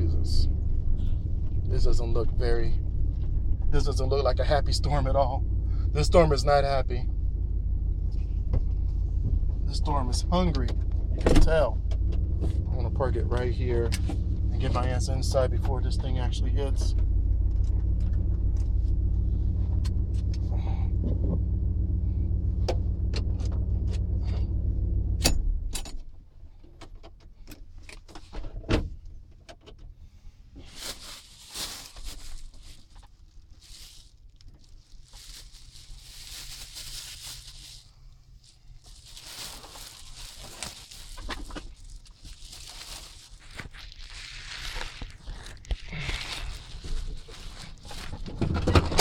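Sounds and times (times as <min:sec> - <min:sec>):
truck engine idling: 0:00.0 - 0:25.2, 0:31.4 - 0:49.0
rustling: 0:30.5 - 0:49.0.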